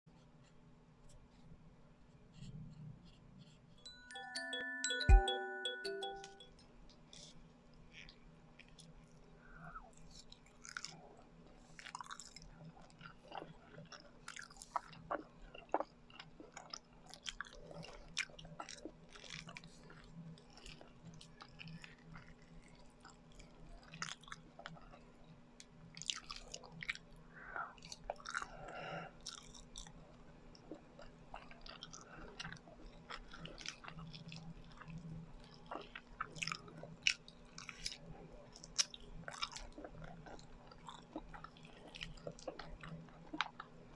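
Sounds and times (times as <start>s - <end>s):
sticky wet chewing: 10.0s - 27.2s, 27.8s - 43.9s.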